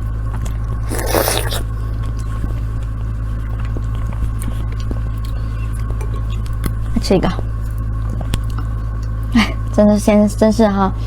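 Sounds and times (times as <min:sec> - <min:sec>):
chewing and mouth clicks: 0:00.4 - 0:06.8
breathy hiss: 0:00.9 - 0:01.7.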